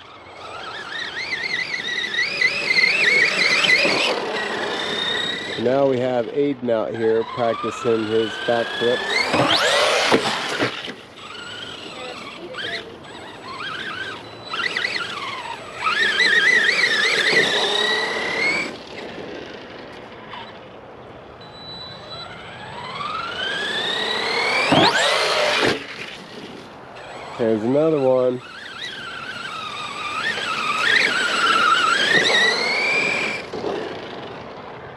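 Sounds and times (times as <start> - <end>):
electric motor whining: 0.0 - 20.7, 21.4 - 34.7.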